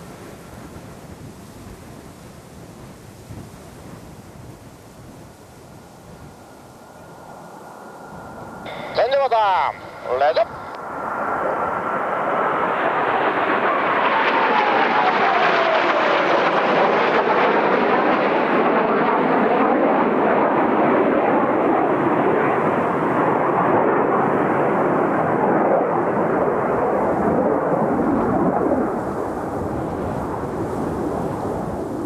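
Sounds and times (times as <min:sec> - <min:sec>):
jet engines rumbling: 0:00.0 - 0:32.0.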